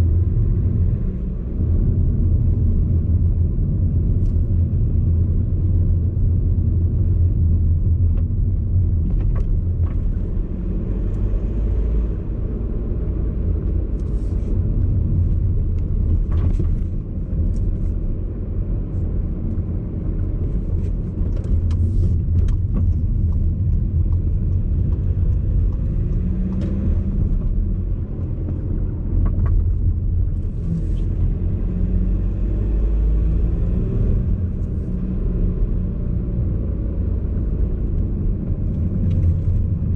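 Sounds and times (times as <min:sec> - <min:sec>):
road and tyre rumble: 0:00.0 - 0:39.9.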